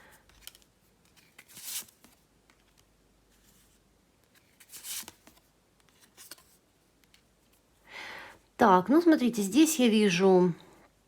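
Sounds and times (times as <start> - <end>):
cards rustling and sliding: 0.1 - 7.6.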